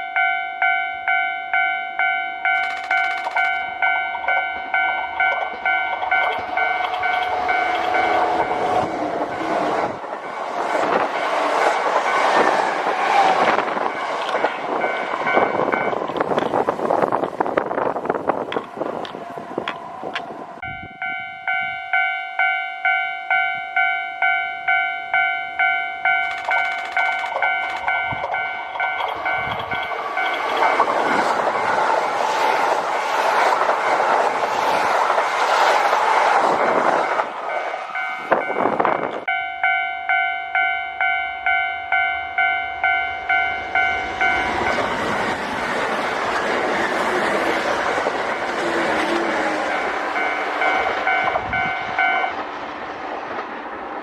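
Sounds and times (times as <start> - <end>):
level crossing alarm bell: 0.0 - 9.6, 13.7 - 16.2, 20.6 - 31.3, 37.1 - 45.1, 49.6 - 52.4
train wheels on rails: 0.7 - 54.0.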